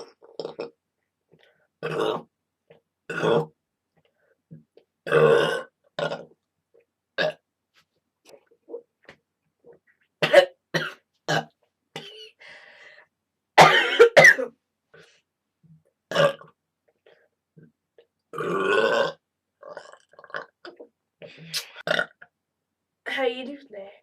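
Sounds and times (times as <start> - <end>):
girl burping: 13.6 - 14.6, 18.4 - 19.2.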